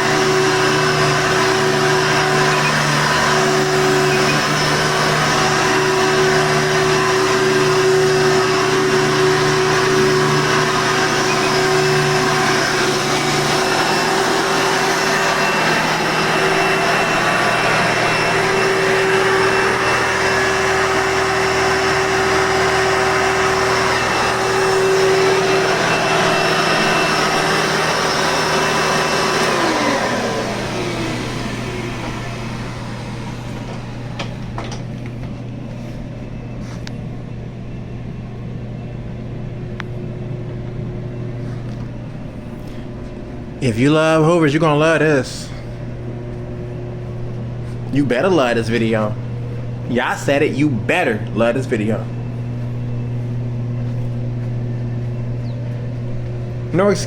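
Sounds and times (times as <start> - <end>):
vacuum cleaner motor whine: 0.0 - 57.0.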